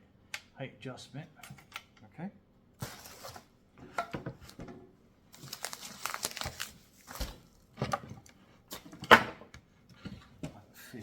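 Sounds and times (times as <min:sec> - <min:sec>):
plastic packaging crinkling: 0:05.3 - 0:07.6.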